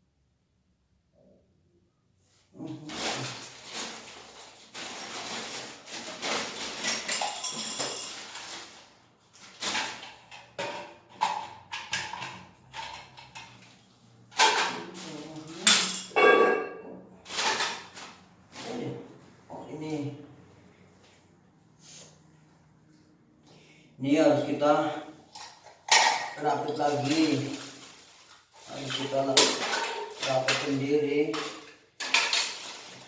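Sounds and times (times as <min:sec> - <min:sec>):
plastic parts rustling and rattling: 0:02.9 - 0:16.1, 0:17.3 - 0:18.7, 0:25.3 - 0:33.0.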